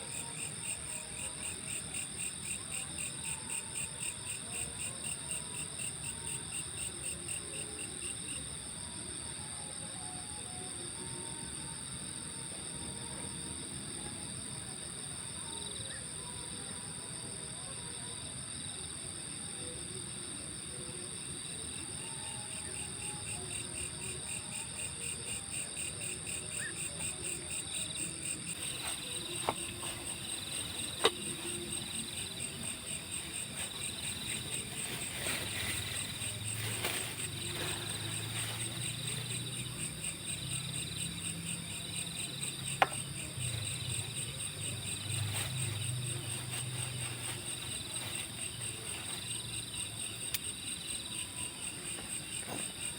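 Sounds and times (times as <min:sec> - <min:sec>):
low repeating cricket chirp: 0:00.0 - 0:52.9
high cricket trill: 0:19.6 - 0:52.9.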